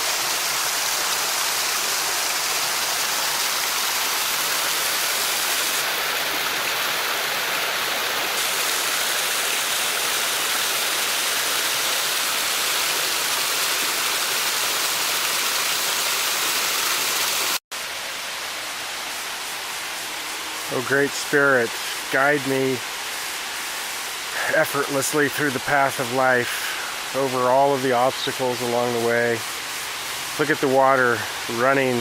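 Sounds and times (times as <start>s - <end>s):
water rushing over waterfall: 0.0s - 17.6s.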